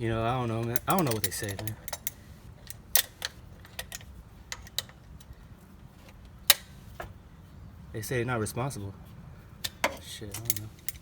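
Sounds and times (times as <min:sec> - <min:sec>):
hand tools clinking: 0:00.4 - 0:05.4, 0:09.6 - 0:11.0.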